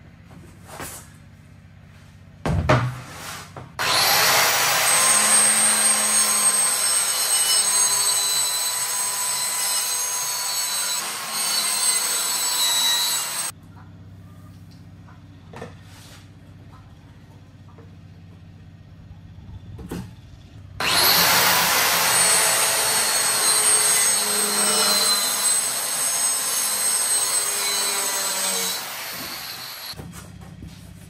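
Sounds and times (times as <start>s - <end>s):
electric saw cutting wood: 3.8s - 13.5s, 20.8s - 30.0s.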